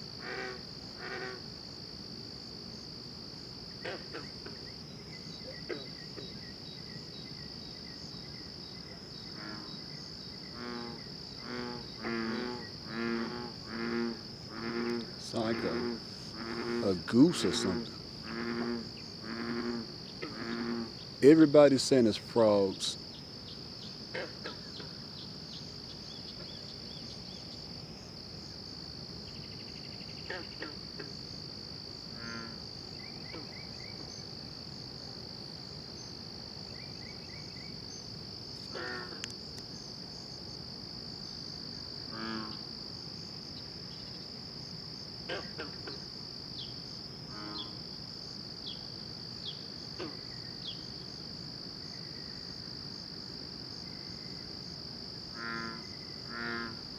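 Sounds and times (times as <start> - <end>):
high insect trill: 0.0 - 56.9
frogs giving pulsed calls: 9.3 - 27.1, 29.4 - 31.2, 32.1 - 34.3, 55.3 - 56.9.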